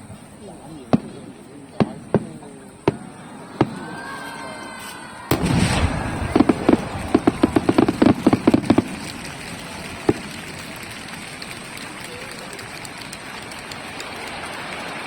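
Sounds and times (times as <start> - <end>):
crackling firework pops: 0.8 - 4.0, 5.3 - 15.0
firework bang: 5.3 - 12.1
sharp firework reports: 5.3 - 15.0.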